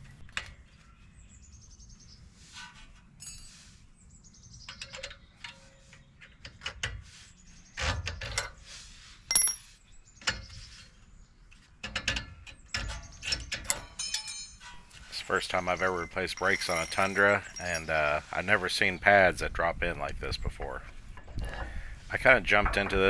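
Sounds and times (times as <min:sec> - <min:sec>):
hand tools clinking on metal: 0:13.7 - 0:23.0.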